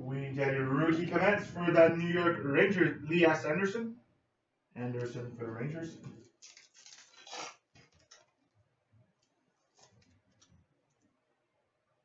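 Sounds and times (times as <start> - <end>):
cards and wrappers rustling: 6.2 - 8.4, 9.6 - 10.6.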